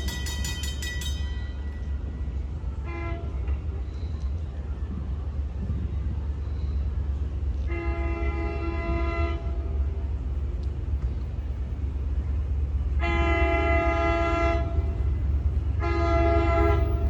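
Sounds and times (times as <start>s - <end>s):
train rumble: 0.0s - 17.0s
train horn: 2.6s - 3.8s, 7.6s - 10.0s, 13.0s - 17.0s.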